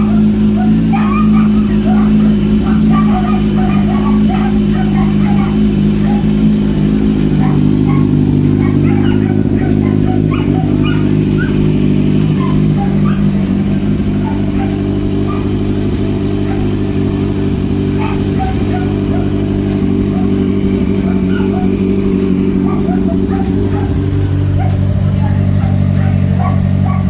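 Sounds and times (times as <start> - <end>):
motorcycle engine idling: 0.0 - 27.0.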